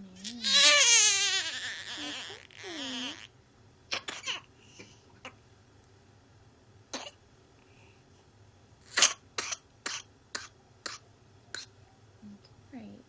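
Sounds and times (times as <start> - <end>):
child coughing: 3.9 - 4.5, 8.9 - 11.0.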